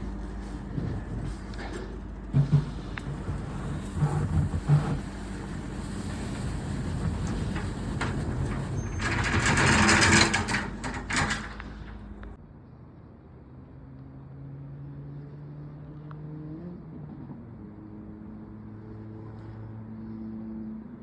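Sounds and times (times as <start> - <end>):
excavator engine under load: 0.0 - 12.4
masonry crunching and scraping: 0.0 - 12.4.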